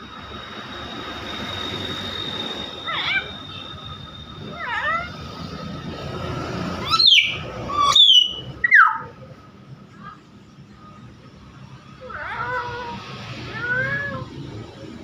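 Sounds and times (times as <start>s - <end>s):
piercing downward-sliding whistles: 0.0s - 6.1s, 6.8s - 9.1s.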